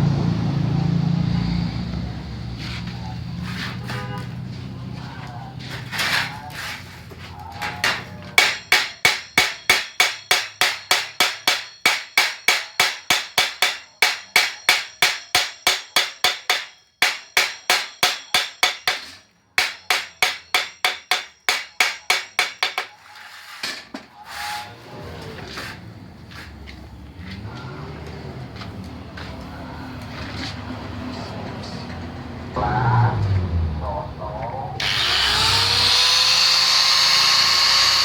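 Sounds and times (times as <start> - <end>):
metal strokes on bandsaw blade: 5.7 - 24.8.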